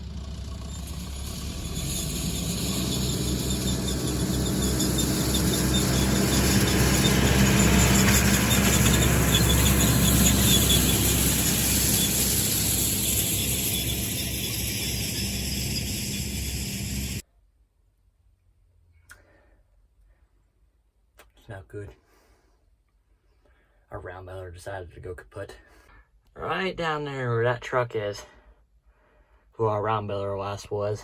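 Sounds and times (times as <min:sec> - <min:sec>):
haying machinery rattling: 0:00.0 - 0:17.2
tractor engine under load: 0:00.0 - 0:17.2
faint thin squeal: 0:00.4 - 0:17.2.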